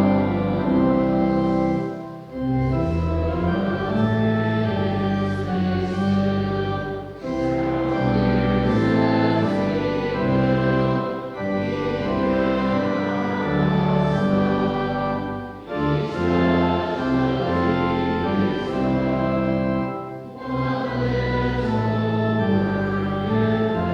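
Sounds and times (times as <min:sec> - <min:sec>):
church organ playing chords: 0:00.0 - 0:23.9.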